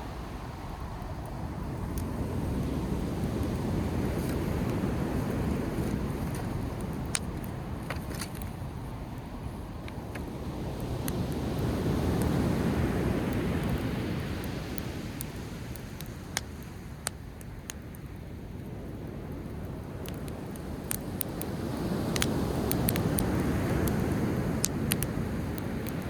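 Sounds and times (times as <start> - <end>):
campfire crackling and popping: 0.0 - 26.0.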